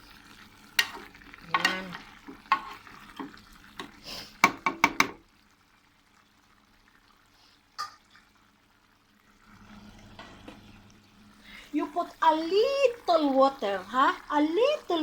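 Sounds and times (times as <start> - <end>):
water pouring into pan: 0.0 - 15.0
utensil knocking on pan: 4.4 - 5.2.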